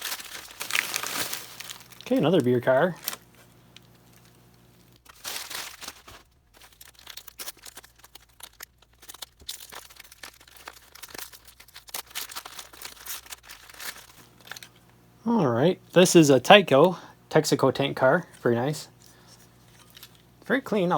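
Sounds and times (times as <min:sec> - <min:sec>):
packing material crinkling and tearing: 0:00.0 - 0:15.0, 0:18.1 - 0:20.9.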